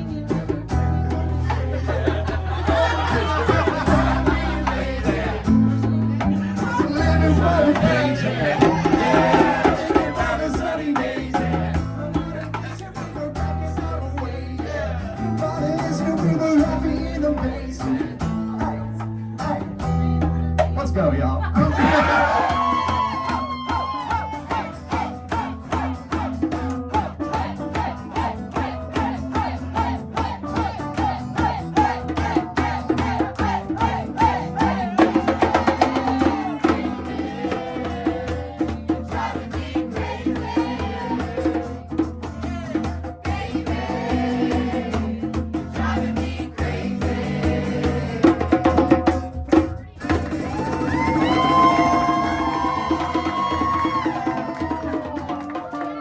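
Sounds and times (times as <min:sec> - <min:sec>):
live band playing: 0:00.0 - 0:56.0
person singing: 0:30.4 - 0:39.4.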